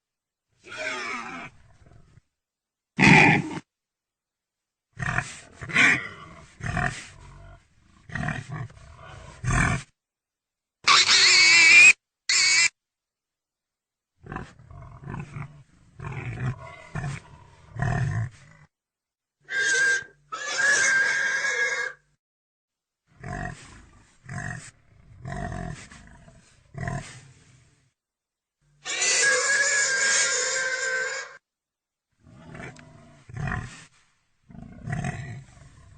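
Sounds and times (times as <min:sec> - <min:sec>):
pig squealing: 0:00.7 - 0:01.5, 0:03.0 - 0:03.6, 0:10.8 - 0:12.8, 0:19.5 - 0:22.0, 0:28.8 - 0:31.4
pig grunting: 0:03.0 - 0:03.7, 0:05.0 - 0:09.9, 0:14.2 - 0:18.7, 0:23.2 - 0:27.2, 0:32.2 - 0:33.8, 0:34.5 - 0:35.9.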